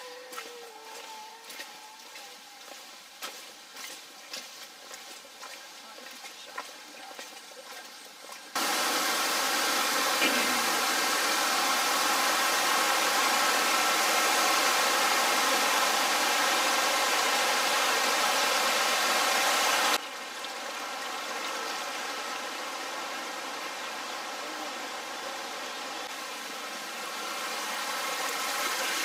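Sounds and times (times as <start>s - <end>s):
steady rushing hiss: 8.5s - 20.0s.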